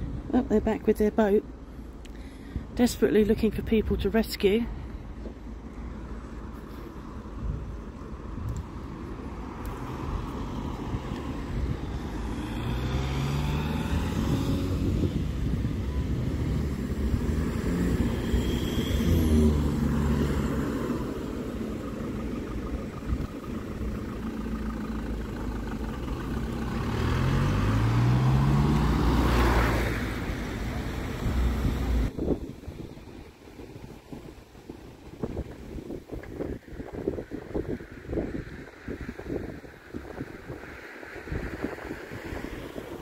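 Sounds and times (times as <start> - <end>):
road rumble: 0.0 - 43.0
vehicle engine speeding up: 9.4 - 32.2.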